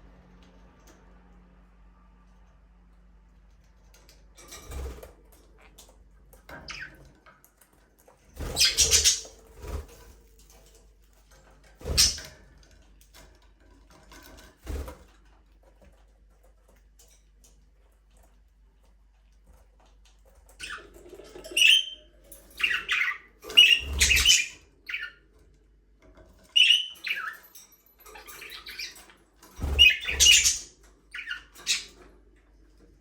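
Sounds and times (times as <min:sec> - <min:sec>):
budgerigars chirping harshly: 0:08.5 - 0:09.3, 0:12.0 - 0:12.2, 0:22.6 - 0:25.1, 0:26.6 - 0:27.4, 0:29.6 - 0:32.0.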